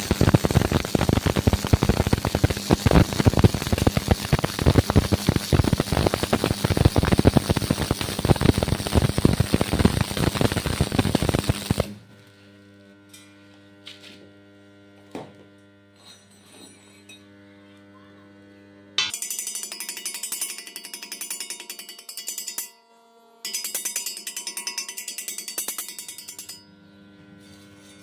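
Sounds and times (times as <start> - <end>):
welding arc crackling: 0.0 - 12.7
electrical hum: 0.0 - 15.9.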